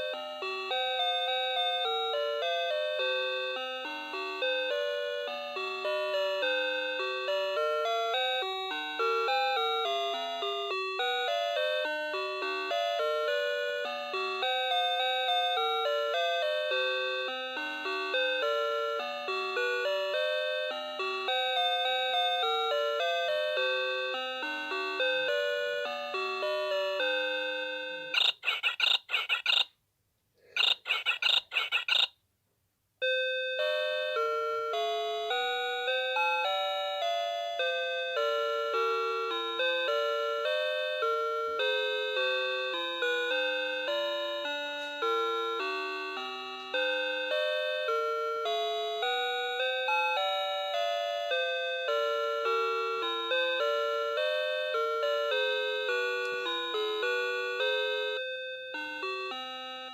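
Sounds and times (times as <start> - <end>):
quick electronic alarm beeps: 28.1 - 29.7, 30.6 - 32.1.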